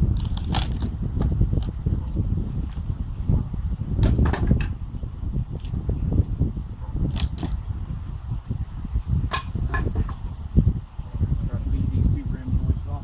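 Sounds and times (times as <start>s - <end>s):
sharp knocks on concrete: 4.0s - 4.7s, 9.3s - 10.2s.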